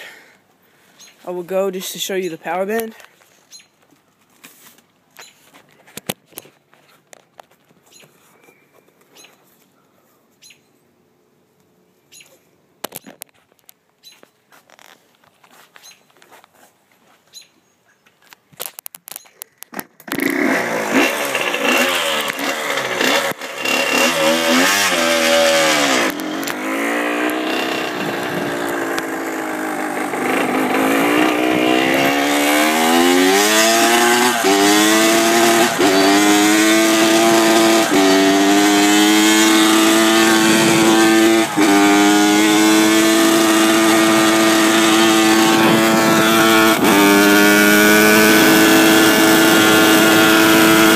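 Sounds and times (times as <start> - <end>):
dirt bike engine revving: 20.1 - 50.9.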